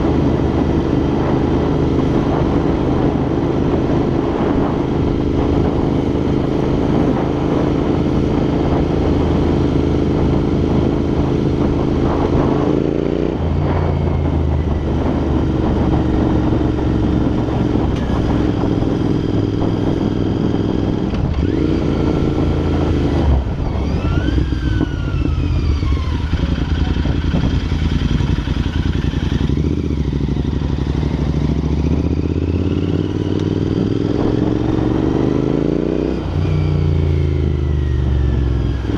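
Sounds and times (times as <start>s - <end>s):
motorcycle engine under way: 0.0s - 38.9s
wind noise on microphone: 0.0s - 38.9s.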